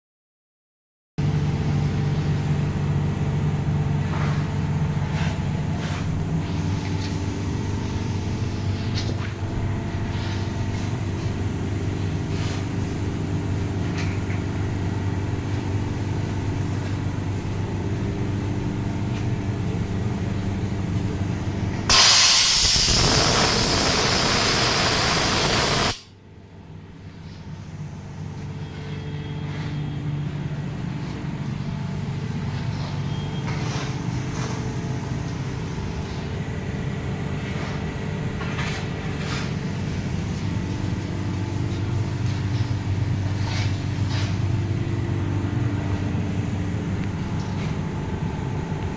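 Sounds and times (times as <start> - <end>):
air compressor humming: 1.2 - 48.9
compressed air hissing: 21.9 - 26.1.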